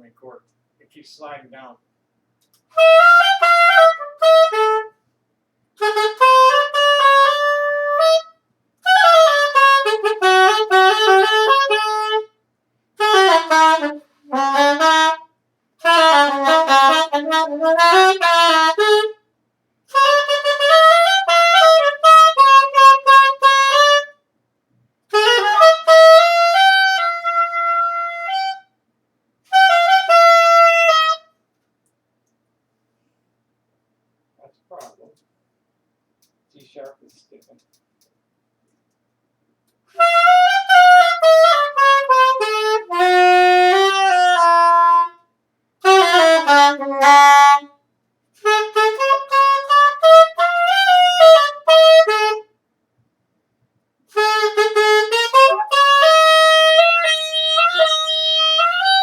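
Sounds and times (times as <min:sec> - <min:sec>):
solo saxophone: 0:02.5 - 0:05.0, 0:05.8 - 0:12.4, 0:13.0 - 0:24.2, 0:25.1 - 0:28.8, 0:29.5 - 0:31.4, 0:39.9 - 0:47.8, 0:48.4 - 0:52.5, 0:54.1 - 0:59.0.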